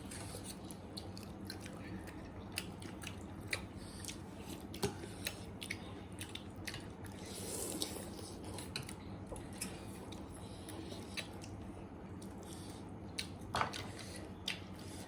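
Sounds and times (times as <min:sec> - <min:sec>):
chewing with wet clicks: 0:00.0 - 0:15.0.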